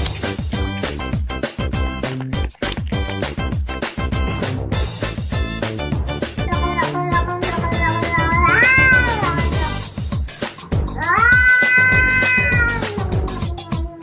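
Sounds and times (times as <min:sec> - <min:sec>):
background music with beat: 0:00.0 - 0:14.0
cat yowling: 0:06.5 - 0:09.7, 0:11.0 - 0:14.0.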